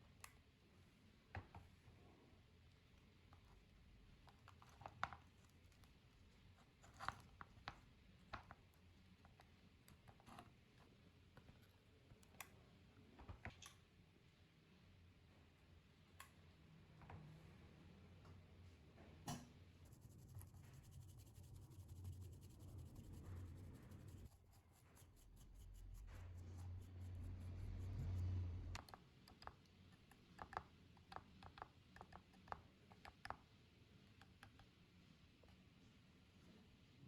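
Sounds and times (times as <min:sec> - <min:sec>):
low hum: 0:25.1 - 0:28.8
small sharp clicks and taps: 0:28.8 - 0:33.5.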